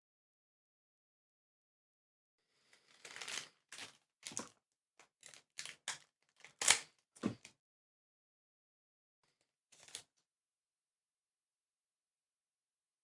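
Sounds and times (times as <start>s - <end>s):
card pack crinkling: 3.0s - 4.5s.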